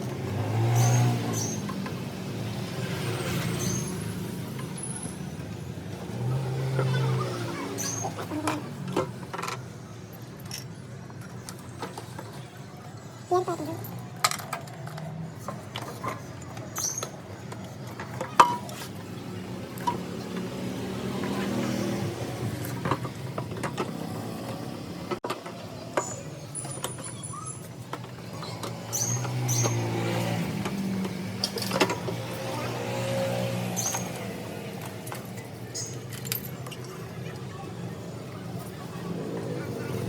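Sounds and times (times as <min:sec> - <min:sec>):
clicks and clinks: 0:33.7 - 0:34.2, 0:34.8 - 0:37.1.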